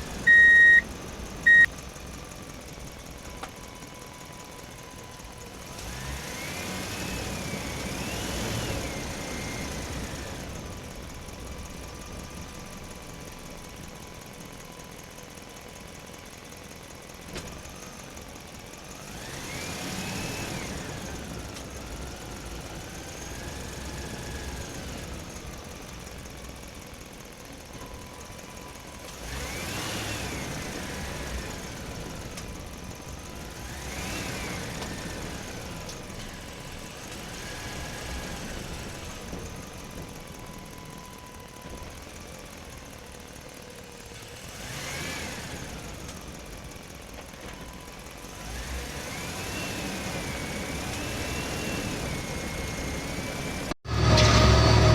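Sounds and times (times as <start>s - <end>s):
motor revving up and down: 5.7s - 10.1s, 44.5s - 45.8s.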